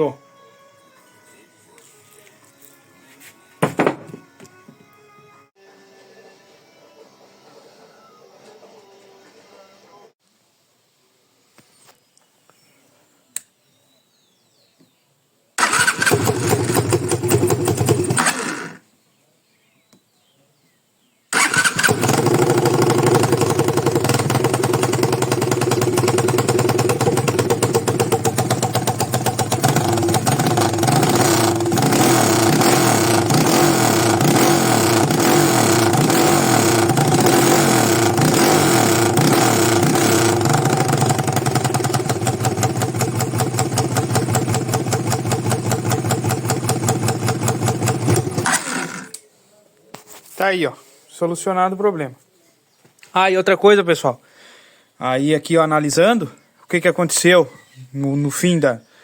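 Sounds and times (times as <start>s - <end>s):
motorcycle engine starting and idling: 15.6s - 18.8s, 21.3s - 49.2s.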